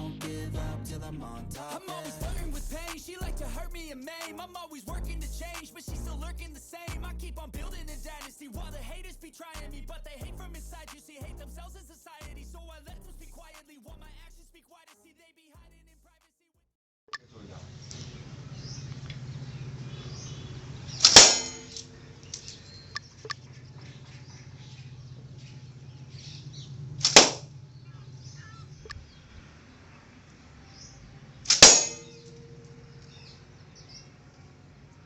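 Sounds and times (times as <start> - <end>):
steady low hum: 0.0 - 4.0, 17.4 - 35.0.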